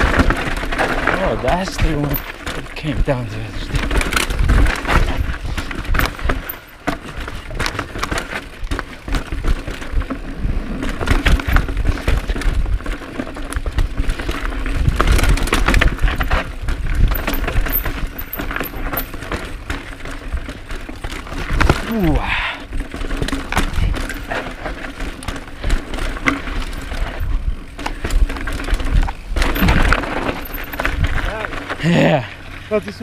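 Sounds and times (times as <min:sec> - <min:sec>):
mountain bike clattering over rocks: 0:00.0 - 0:33.0
wind buffeting microphone: 0:03.6 - 0:06.4.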